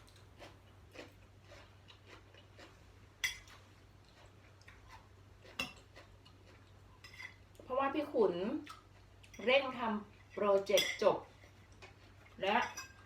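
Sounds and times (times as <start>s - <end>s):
cutlery clinking on plates: 12.6s - 13.0s.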